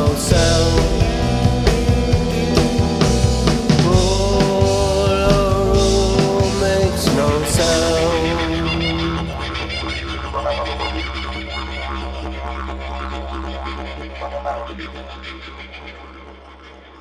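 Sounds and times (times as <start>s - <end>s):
rock band music: 0.0s - 12.2s.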